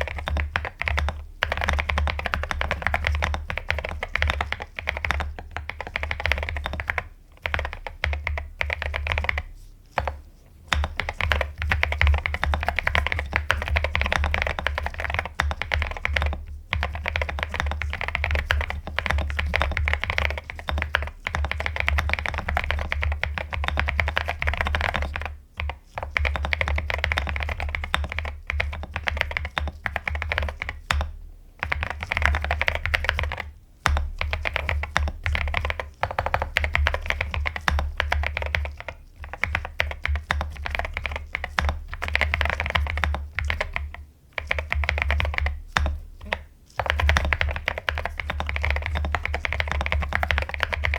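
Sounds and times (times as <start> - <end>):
typing on mechanical keyboard: 0.0 - 31.0, 31.6 - 50.9.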